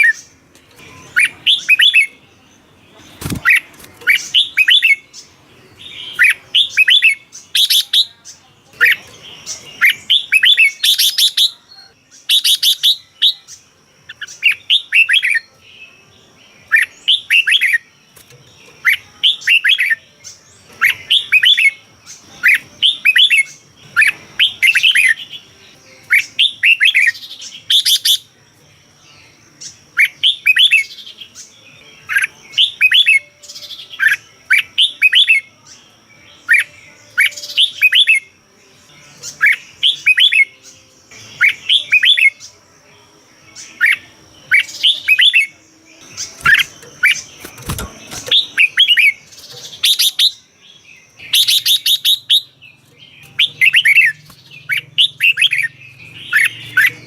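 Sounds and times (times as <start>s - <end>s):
bird singing warbled phrases: 0.0s - 57.0s.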